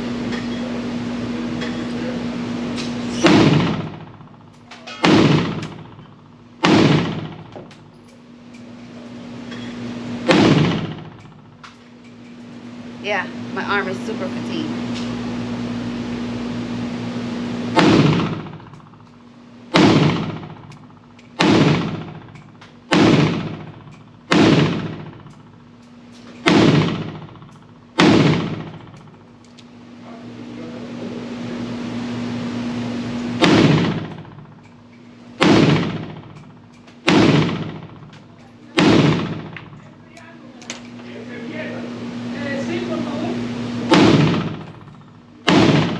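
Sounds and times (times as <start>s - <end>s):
pistol gunshots: 3.2s - 4.2s, 5.0s - 6.0s, 6.6s - 7.7s, 10.2s - 11.2s, 17.7s - 19.0s, 19.7s - 25.6s, 26.4s - 29.0s, 33.4s - 34.6s, 35.4s - 38.1s, 38.8s - 39.8s, 43.9s - 44.8s, 45.4s - 45.9s.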